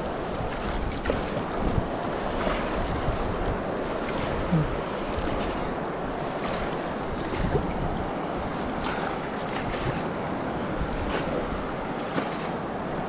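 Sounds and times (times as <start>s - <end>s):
river water rushing and splashing: 0.0s - 13.0s
wind buffeting microphone: 0.0s - 13.0s.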